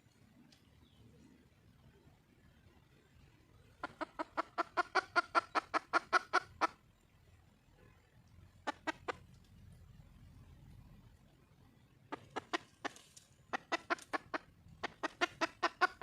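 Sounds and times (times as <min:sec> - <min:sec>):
hen clucking: 0:03.8 - 0:06.8, 0:08.6 - 0:09.4, 0:12.1 - 0:16.0.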